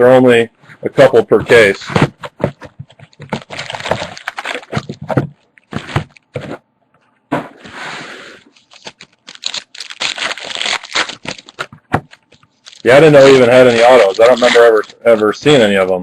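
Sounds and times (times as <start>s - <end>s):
card wrappers crinkling and tearing: 2.4s - 6.4s, 8.5s - 15.8s.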